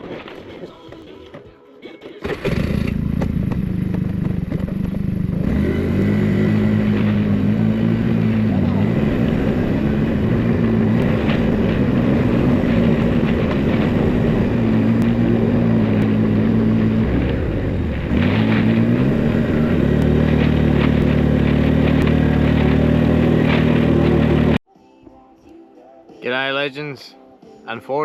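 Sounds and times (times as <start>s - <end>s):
vehicle engine driving: 2.2s - 24.6s.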